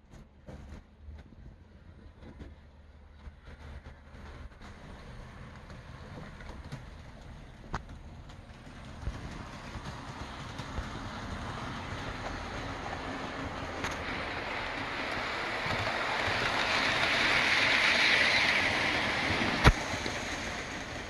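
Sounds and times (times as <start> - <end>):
model train running on track: 0.0 - 21.0.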